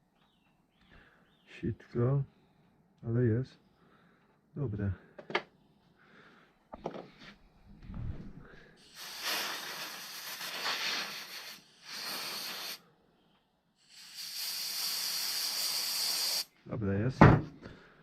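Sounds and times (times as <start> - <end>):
pressurised air nozzle hissing: 8.8 - 12.8, 13.8 - 16.5.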